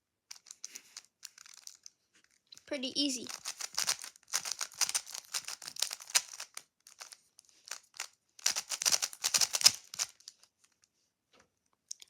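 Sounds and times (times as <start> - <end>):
puzzle cube clicking: 3.2 - 10.2.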